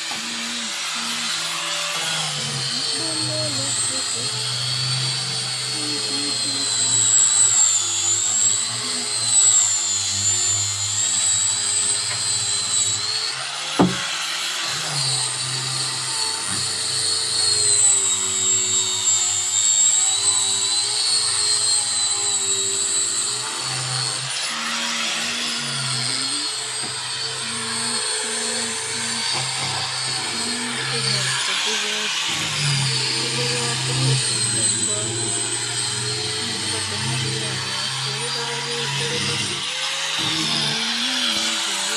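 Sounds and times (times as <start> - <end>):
power tool motor whining: 0.0 - 41.9
sharp knock: 13.8 - 14.0.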